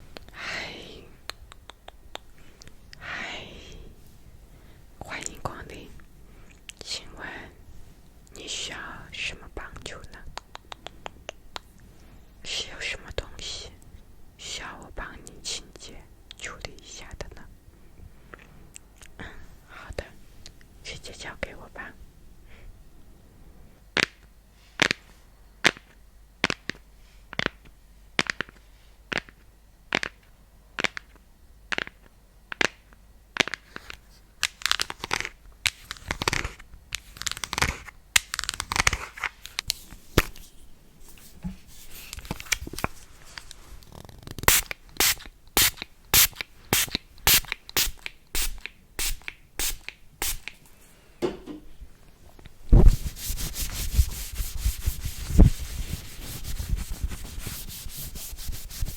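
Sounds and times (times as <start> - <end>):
scratchy rustling: 52.7 - 58.9
steady rubbing: 52.8 - 58.9.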